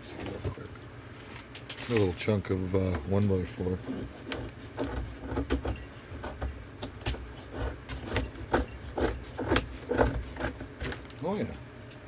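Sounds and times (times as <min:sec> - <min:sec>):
knife blade scraping wood: 0:07.1 - 0:11.0.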